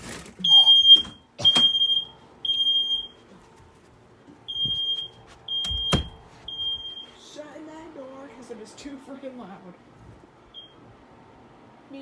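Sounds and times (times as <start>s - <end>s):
smoke alarm beeping: 0.4s - 3.2s, 4.5s - 7.2s, 10.5s - 10.8s.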